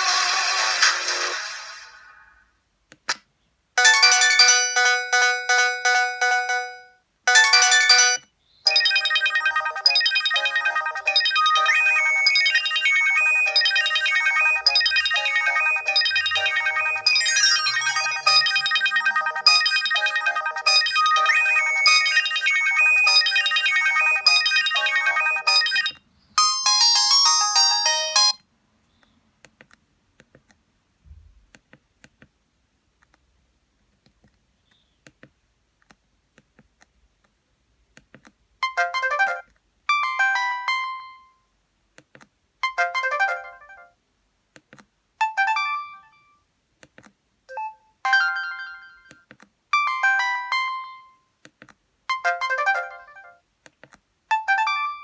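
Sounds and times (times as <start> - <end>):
phone ringtone melody: 3.8 - 28.4, 38.6 - 41.4, 42.6 - 44.0, 45.2 - 46.4, 47.5 - 49.2, 49.8 - 51.3, 52.1 - 53.4, 54.3 - 55.0.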